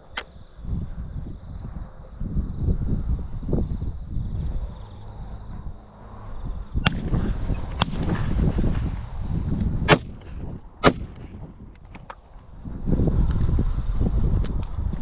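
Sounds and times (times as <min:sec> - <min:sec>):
wind rumble on microphone: 0:00.0 - 0:15.0
shotgun shots: 0:06.8 - 0:08.8, 0:09.9 - 0:11.5.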